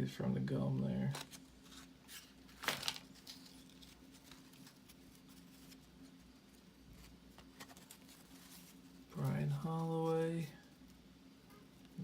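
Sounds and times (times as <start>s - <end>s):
low steady hum: 0.0s - 12.0s
trading cards rustling: 1.0s - 6.3s, 6.9s - 10.8s.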